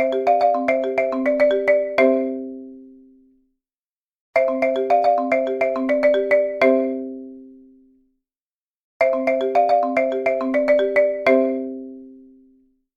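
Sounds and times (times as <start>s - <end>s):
marimba-like alarm ringtone: 0.0s - 2.9s, 4.4s - 7.5s, 9.0s - 12.4s.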